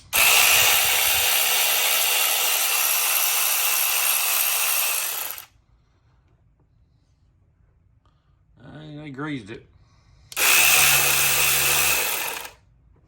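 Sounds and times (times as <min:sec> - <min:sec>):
cordless ratchet wrench whirring: 0:00.0 - 0:05.5, 0:10.3 - 0:12.6.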